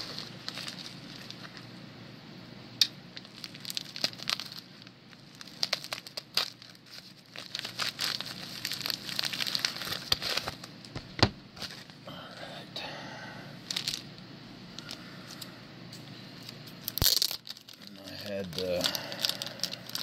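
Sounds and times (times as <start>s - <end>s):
packaging crinkling and tearing: 0.0s - 1.7s, 3.2s - 12.0s, 13.6s - 14.1s, 16.4s - 20.0s.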